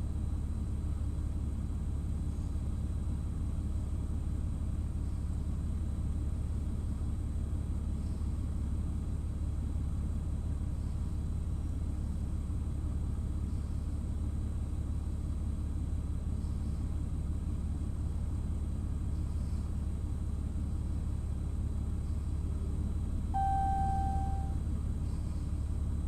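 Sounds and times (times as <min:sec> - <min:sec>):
even beep: 0:23.4 - 0:24.6.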